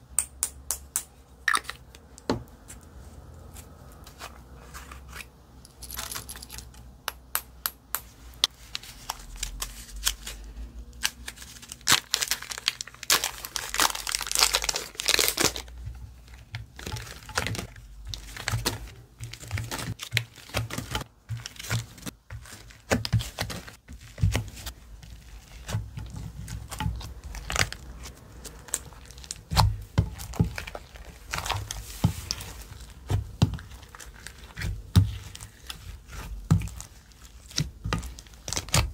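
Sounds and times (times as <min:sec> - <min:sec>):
slime squishing and crackling: 0:08.5 - 0:38.9.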